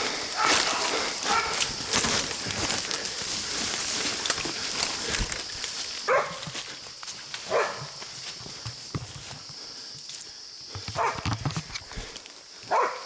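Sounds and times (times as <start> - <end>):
dog barking: 0.4 - 1.7, 6.1 - 6.5, 7.5 - 8.0, 11.0 - 11.2, 12.7 - 13.0.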